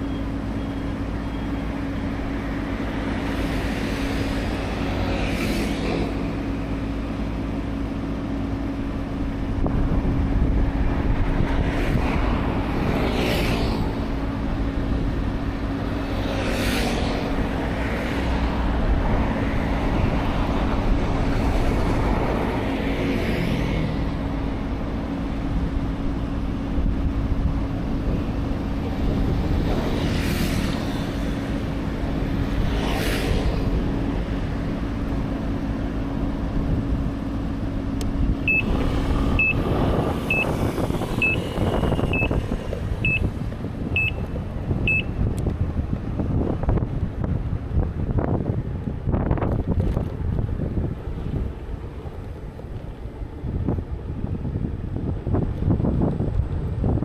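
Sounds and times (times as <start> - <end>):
motor vehicle running: 0.0 - 57.0
short high beeps: 38.5 - 38.7, 39.4 - 39.6, 40.3 - 40.5, 41.2 - 42.3, 43.0 - 43.3, 44.0 - 44.2, 44.9 - 45.2.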